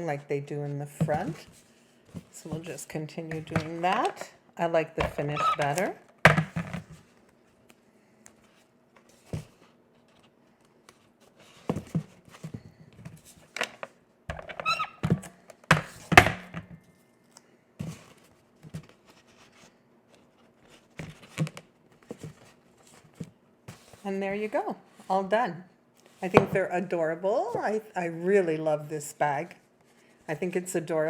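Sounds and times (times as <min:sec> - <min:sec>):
brief squeak: 0:14.6 - 0:15.0.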